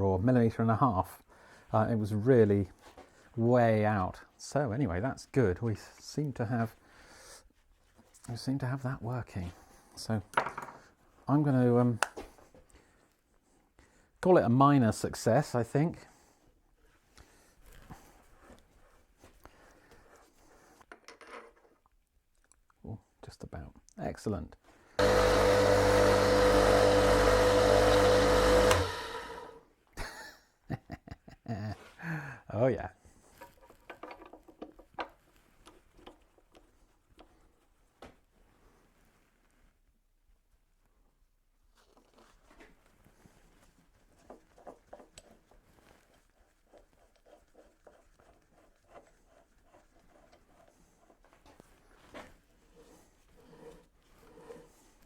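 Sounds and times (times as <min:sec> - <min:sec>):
lathe motor humming and winding down: 0:25.0 - 0:29.6.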